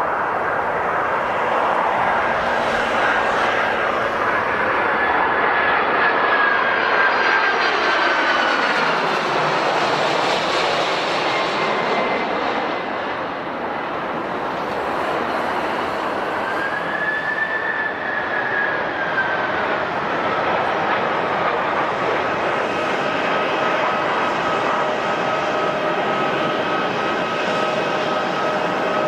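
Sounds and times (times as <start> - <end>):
jet engines rushing and whining: 0.0 - 29.0.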